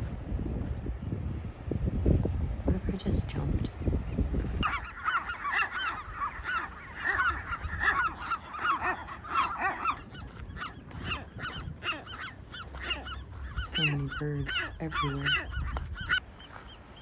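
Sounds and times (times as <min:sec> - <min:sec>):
gulls squawking: 0:04.6 - 0:17.0.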